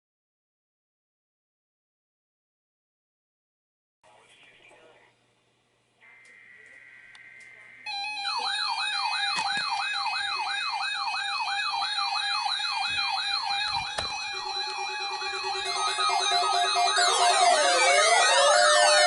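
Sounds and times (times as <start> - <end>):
warbling siren-like alarms: 7.9 - 19.0
electronic beeps: 12.3 - 19.0
lower beeping tone: 12.6 - 19.0.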